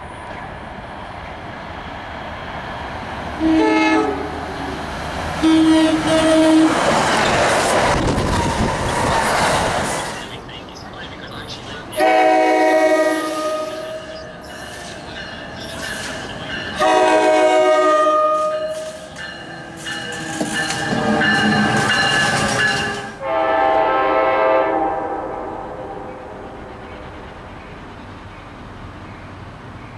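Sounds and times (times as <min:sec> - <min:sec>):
rumble of passing train: 0:00.0 - 0:29.9
locomotive air horn blasts: 0:03.4 - 0:04.7, 0:05.4 - 0:06.9, 0:12.0 - 0:14.2, 0:16.8 - 0:18.9, 0:22.9 - 0:26.3.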